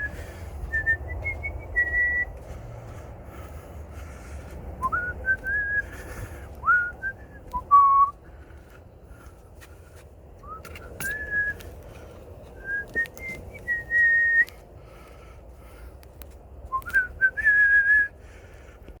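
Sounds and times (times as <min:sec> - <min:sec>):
person whistling: 0:00.0 - 0:02.3, 0:04.8 - 0:06.0, 0:06.6 - 0:08.2, 0:10.4 - 0:11.8, 0:12.6 - 0:14.6, 0:16.7 - 0:18.1.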